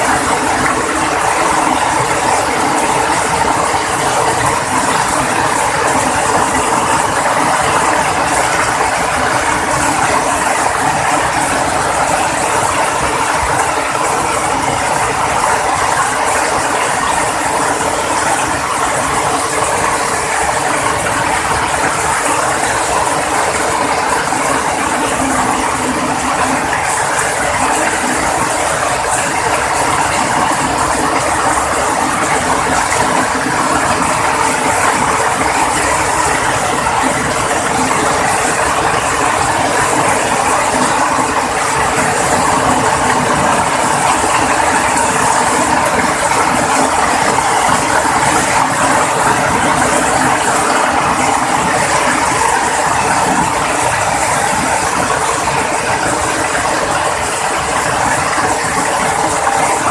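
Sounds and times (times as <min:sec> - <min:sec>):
heavy rain on hard surfaces: 0:00.0 - 0:59.9.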